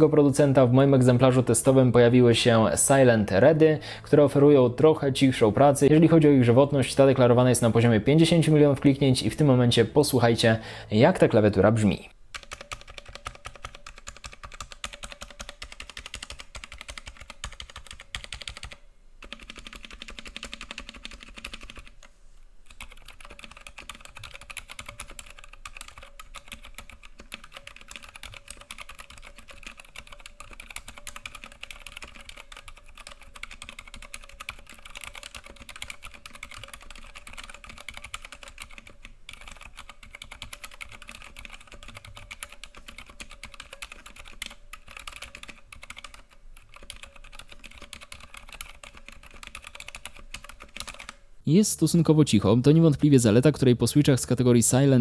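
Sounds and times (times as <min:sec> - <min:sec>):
fast typing on mechanical keyboard: 0:12.3 - 0:22.1, 0:22.7 - 0:51.2.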